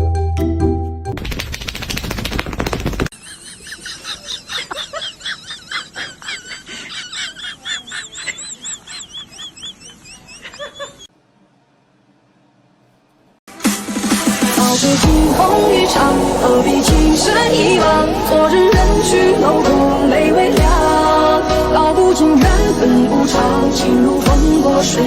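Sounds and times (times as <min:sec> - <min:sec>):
high-pitched chirping: 0:07.8 - 0:11.1.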